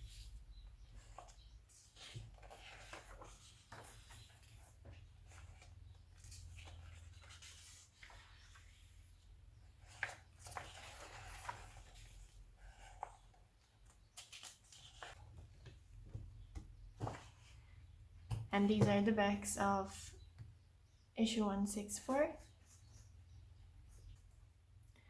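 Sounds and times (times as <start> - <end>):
magazine pages rustling: 0.9 - 9.0, 9.8 - 15.5.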